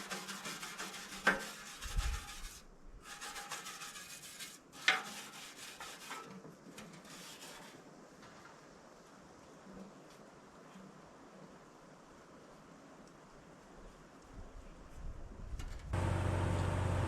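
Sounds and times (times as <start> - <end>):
wire brush scrubbing metal tank: 0.0 - 7.8.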